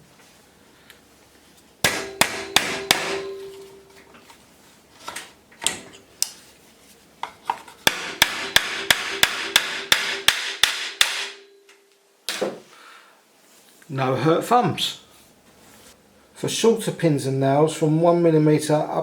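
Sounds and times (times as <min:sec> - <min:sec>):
hammer striking a nail: 0:01.8 - 0:03.6, 0:07.8 - 0:11.5.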